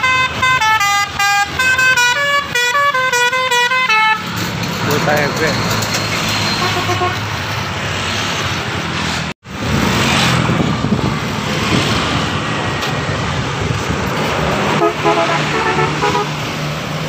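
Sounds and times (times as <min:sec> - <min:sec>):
bus engine passing: 0:00.0 - 0:17.0
road traffic: 0:00.0 - 0:17.0
bus horn playing short notes: 0:14.8 - 0:16.3.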